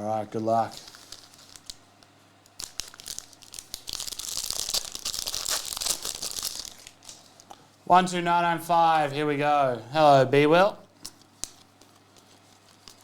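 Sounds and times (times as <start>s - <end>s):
foil wrapper tearing and crinkling: 0.7s - 7.5s, 11.0s - 13.0s.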